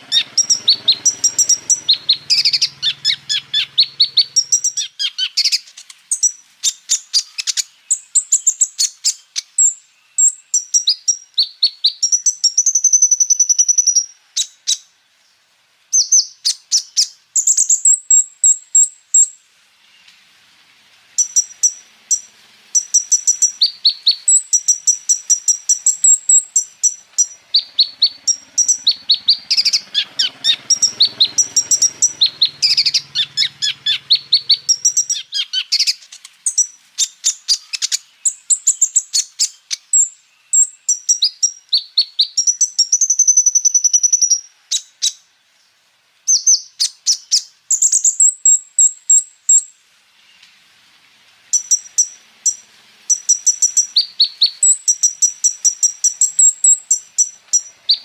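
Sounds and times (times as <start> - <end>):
bird singing rapid trills: 0.0 - 14.9, 15.9 - 19.4, 21.2 - 45.3, 46.3 - 49.8, 51.5 - 58.0
imitated bird calls: 0.0 - 15.0, 21.2 - 45.2, 51.5 - 58.0.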